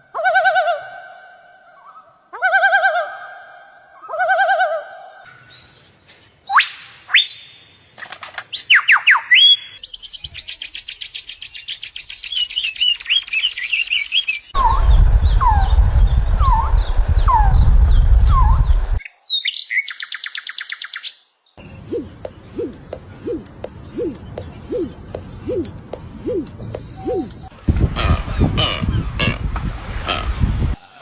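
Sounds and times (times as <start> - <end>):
bird songs and calls: 8.5 - 29.4
low rumble: 14.6 - 19.0.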